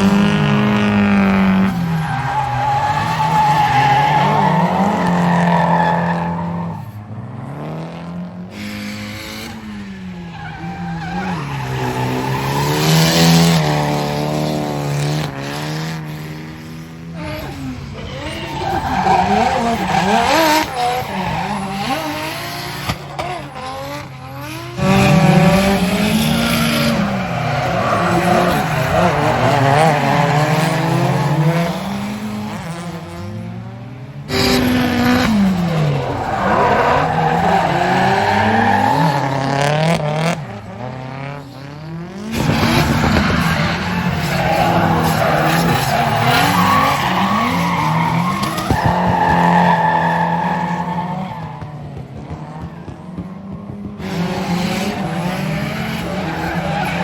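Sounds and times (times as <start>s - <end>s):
car engines revving: 0.0s - 57.0s.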